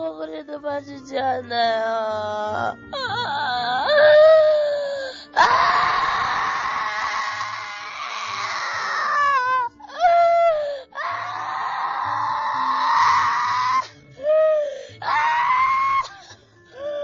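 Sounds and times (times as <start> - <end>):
person wailing and screaming: 5.3 - 13.9, 15.0 - 16.3
person sobbing: 13.6 - 17.0.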